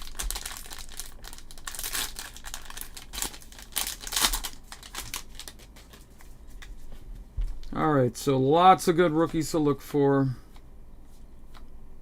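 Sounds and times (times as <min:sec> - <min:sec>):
plastic wrapper crinkling and tearing: 0:00.0 - 0:06.0.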